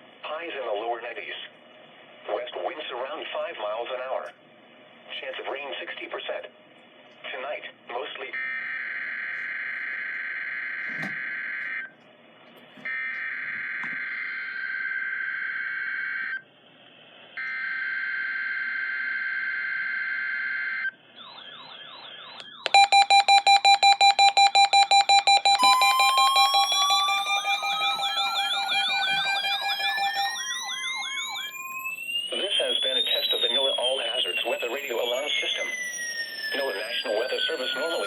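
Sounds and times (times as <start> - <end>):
rapid pulsing beeps: 22.5 - 38.0
rising siren-like sweeps: 24.3 - 38.0
warbling tone: 25.0 - 38.0.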